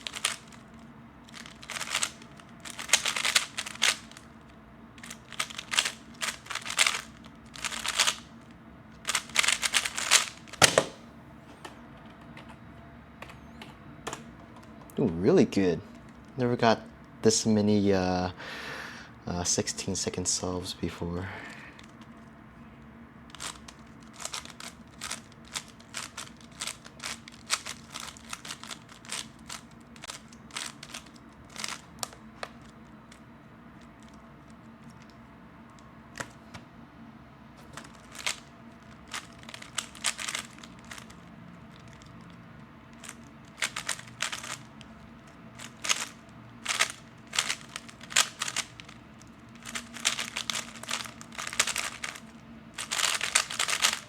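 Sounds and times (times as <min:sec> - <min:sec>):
puzzle cube plastic layers clicking: 0:00.0 - 0:04.3, 0:05.0 - 0:08.3, 0:09.0 - 0:11.0, 0:23.3 - 0:32.8, 0:37.6 - 0:54.0.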